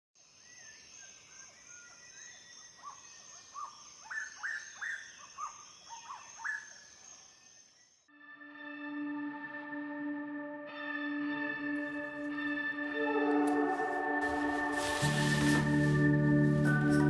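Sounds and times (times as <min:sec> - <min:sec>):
small birds chirping: 0:00.2 - 0:08.1.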